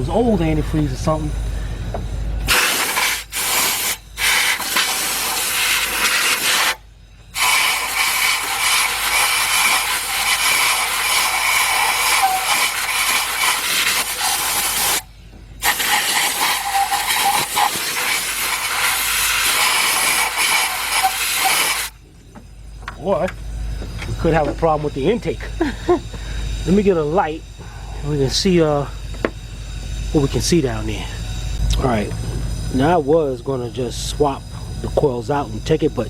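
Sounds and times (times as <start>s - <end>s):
compressed air hissing from blow gun: 0.2s - 22.0s.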